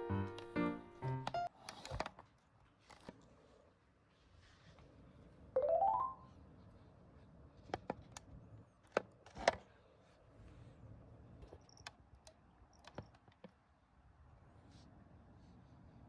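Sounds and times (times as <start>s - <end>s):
rising chime sound effect: 5.6s - 6.2s.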